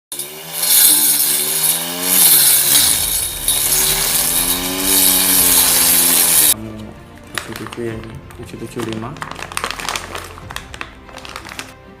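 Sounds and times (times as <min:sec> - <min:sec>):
electric grass trimmer whining: 0:00.2 - 0:06.6.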